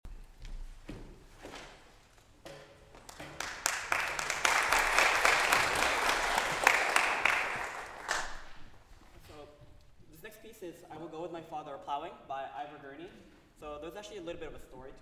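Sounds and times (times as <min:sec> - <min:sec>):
audience clapping: 0:02.9 - 0:08.8.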